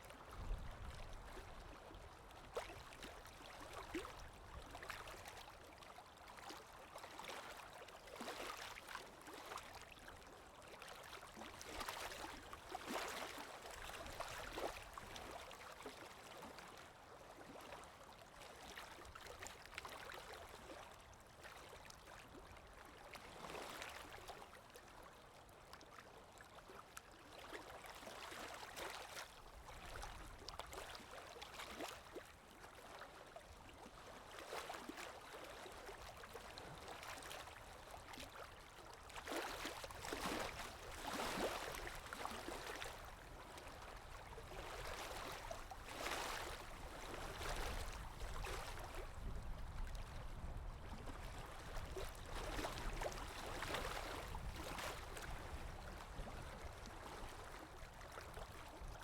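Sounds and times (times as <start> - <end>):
lake waves breaking on shore: 35.4 - 59.0.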